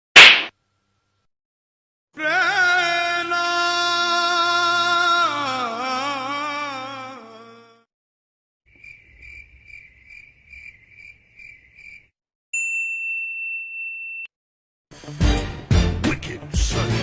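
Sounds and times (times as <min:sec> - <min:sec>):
cricket chirping: 0:08.7 - 0:12.1.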